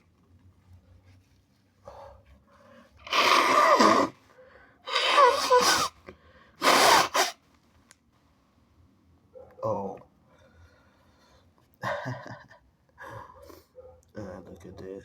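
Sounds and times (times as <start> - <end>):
person blowing nose: 3.0 - 4.2, 4.9 - 6.0, 6.6 - 7.4.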